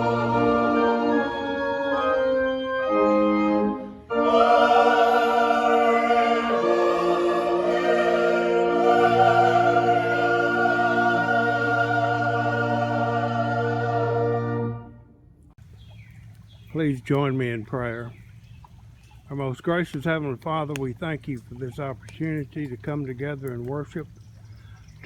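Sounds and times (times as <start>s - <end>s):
choir singing: 0.0s - 3.0s, 3.6s - 15.0s
organ chords: 0.0s - 15.3s.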